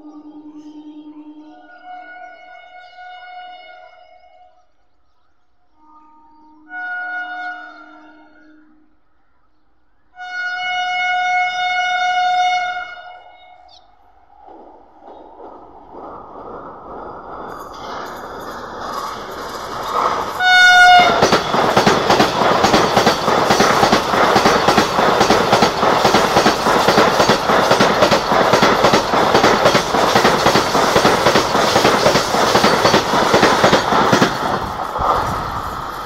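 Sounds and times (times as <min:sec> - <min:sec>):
train horn blast: 0:05.7 - 0:09.1, 0:10.2 - 0:13.6, 0:20.4 - 0:21.4
train passing at speed: 0:11.5 - 0:36.0
clickety-clack over rail joints: 0:14.4 - 0:36.0.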